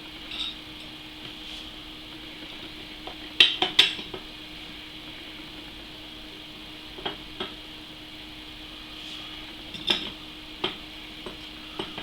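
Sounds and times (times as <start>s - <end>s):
faint steady hum: 0.0s - 12.0s.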